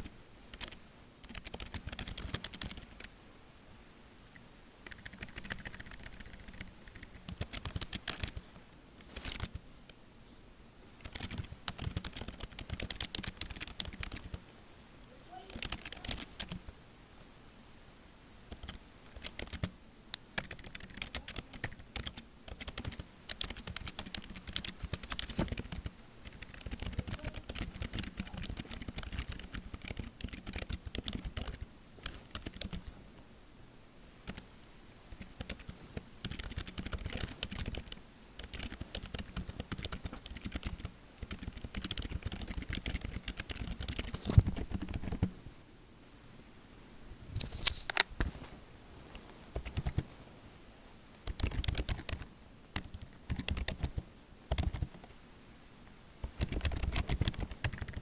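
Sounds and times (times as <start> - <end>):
computer keyboard typing: 0.5 - 3.1, 4.8 - 8.5, 11.0 - 14.4, 15.5 - 16.8, 18.5 - 19.7, 20.4 - 32.8, 35.3 - 45.2, 49.6 - 50.0, 51.2 - 55.0, 56.3 - 58.0.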